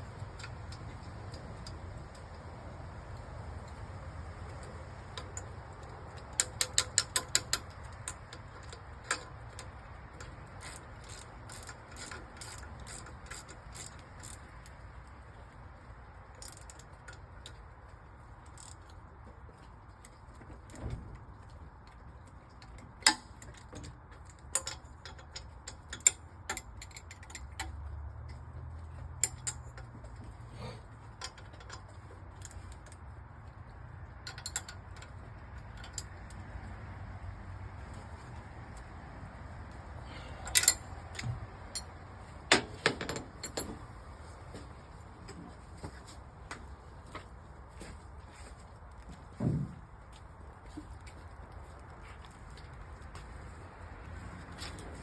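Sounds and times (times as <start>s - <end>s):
hand tools clicking on metal: 4.5s - 14.8s, 22.5s - 30.4s, 34.2s - 36.5s, 40.1s - 43.8s.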